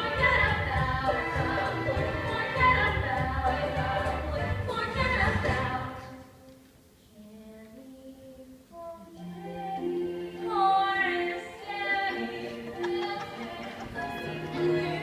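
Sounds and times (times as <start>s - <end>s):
musical theatre singing: 0.0s - 15.0s
held accompaniment: 9.2s - 15.0s.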